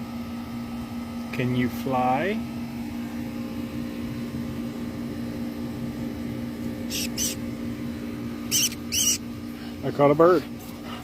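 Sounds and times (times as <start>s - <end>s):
low machine hum: 0.0s - 11.0s
bird squeaking: 6.9s - 7.4s, 8.5s - 9.2s.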